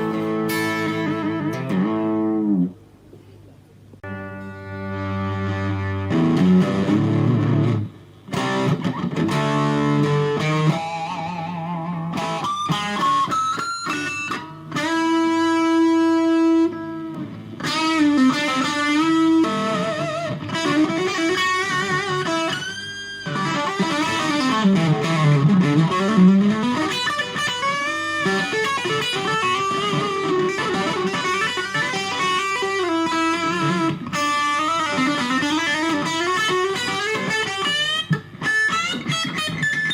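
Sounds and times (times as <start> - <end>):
electric guitar lead lines: 0.0 - 39.9.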